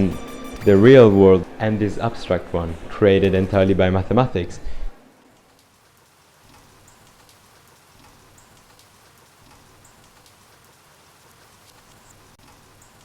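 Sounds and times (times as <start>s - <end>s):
faint rain-like hiss: 0.0s - 13.0s
light scattered ticks: 5.3s - 13.0s.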